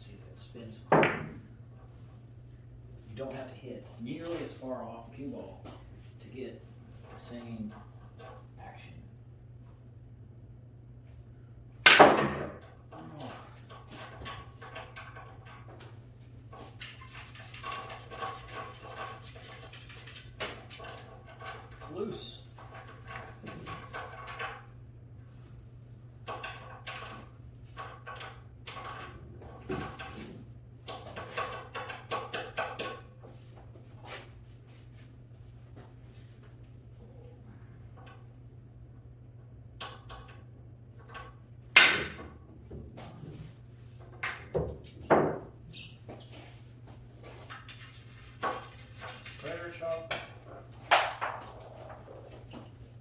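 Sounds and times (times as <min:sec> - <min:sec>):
pool balls clacking: 0:00.7 - 0:02.2, 0:11.8 - 0:53.0
steady low hum: 0:33.0 - 0:44.2.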